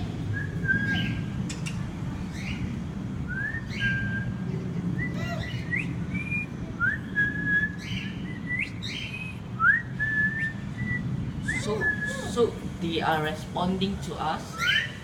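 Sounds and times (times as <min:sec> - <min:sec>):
person whistling to call birds: 0:03.3 - 0:04.4, 0:05.0 - 0:12.3.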